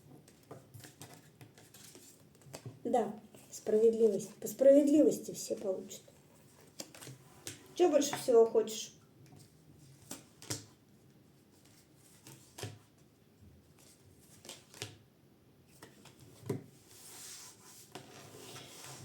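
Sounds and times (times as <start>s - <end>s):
cards sliding rustle: 15.8s - 19.0s.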